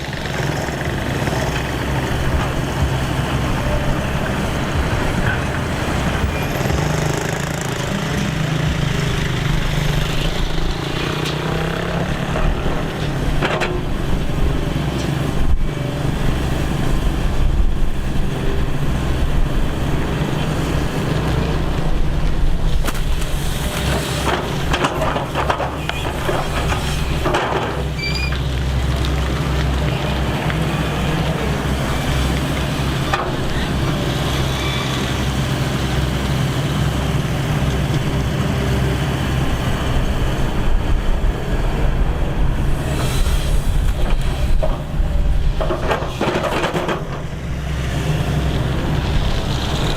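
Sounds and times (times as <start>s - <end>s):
excavator diesel engine running: 0.0s - 49.9s
brief high squeak: 28.0s - 28.4s.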